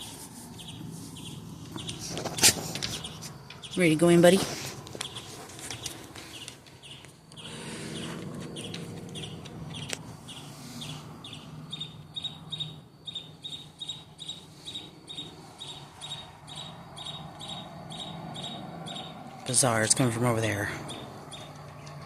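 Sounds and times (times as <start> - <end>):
bird calling high repeated notes: 6.3 - 19.2.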